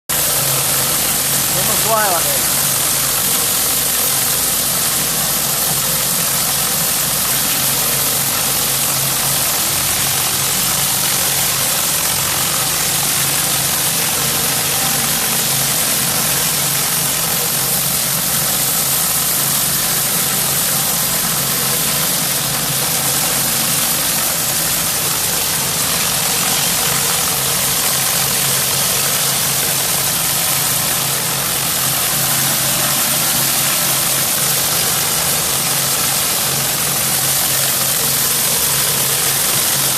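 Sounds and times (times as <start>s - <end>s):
high-pressure water spray hiss: 0.1s - 39.9s
pressure washer engine hum: 0.1s - 39.9s.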